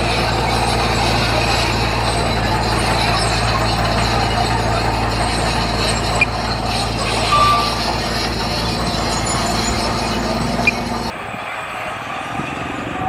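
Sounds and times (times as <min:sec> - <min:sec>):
metallic clatter: 0:00.0 - 0:11.1
diesel machinery running: 0:00.0 - 0:13.0
short beep: 0:07.1 - 0:08.0.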